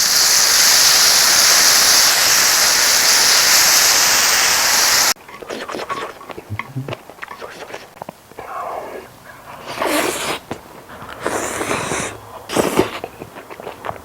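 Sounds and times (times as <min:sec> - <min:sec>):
meat sizzling on a grill: 0:00.0 - 0:05.2.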